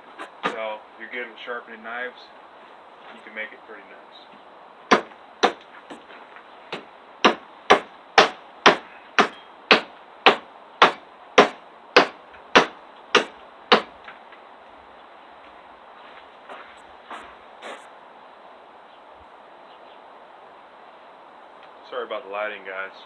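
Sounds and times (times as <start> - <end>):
hatchet chopping wood: 4.9 - 5.7, 6.7 - 13.9.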